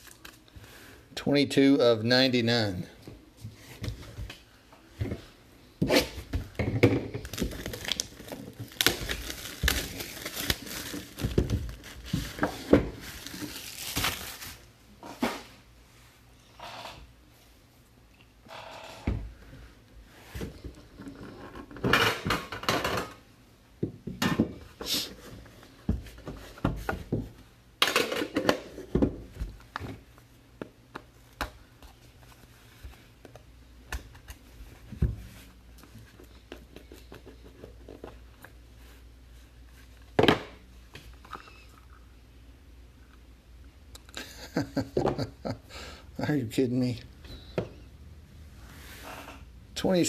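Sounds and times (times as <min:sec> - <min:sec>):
cards and packaging clattering: 0:07.0 - 0:14.6
packaging rustling: 0:07.2 - 0:14.7.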